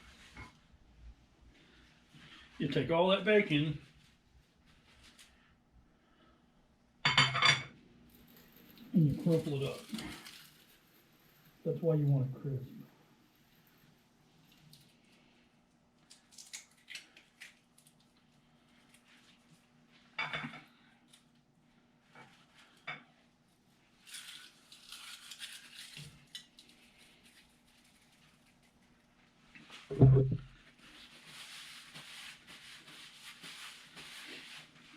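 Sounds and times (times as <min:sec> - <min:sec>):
bacon crumbling over pan: 0:16.0 - 0:18.2, 0:24.0 - 0:28.8.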